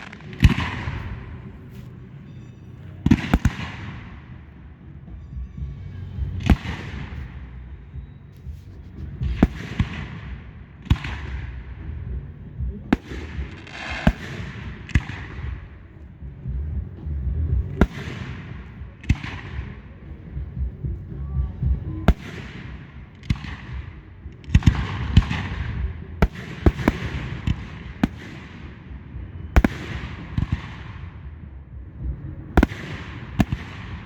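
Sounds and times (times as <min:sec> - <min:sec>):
fireworks crackle: 0:00.0 - 0:05.3, 0:12.8 - 0:31.3
fireworks bangs: 0:00.0 - 0:34.0
low rumble: 0:00.0 - 0:34.0.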